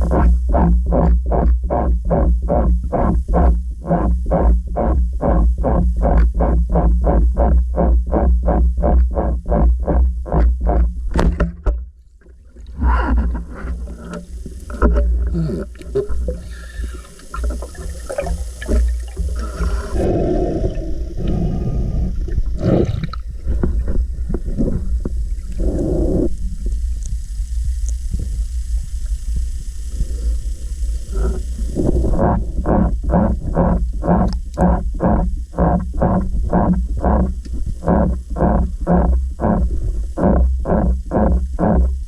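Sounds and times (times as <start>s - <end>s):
underwater gurgling water: 0.0s - 11.5s, 12.2s - 42.0s
low rumble: 0.0s - 42.0s
knocks and scrapes: 10.0s - 16.4s.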